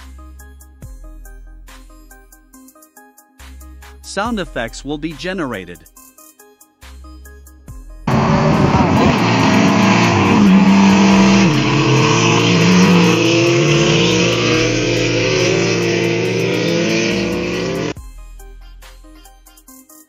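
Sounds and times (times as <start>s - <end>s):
car engine revving: 8.1s - 18.0s.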